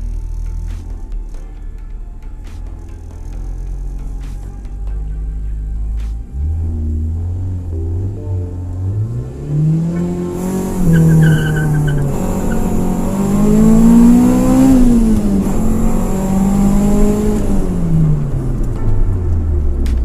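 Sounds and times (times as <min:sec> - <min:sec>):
car engine revving: 0:00.0 - 0:20.0.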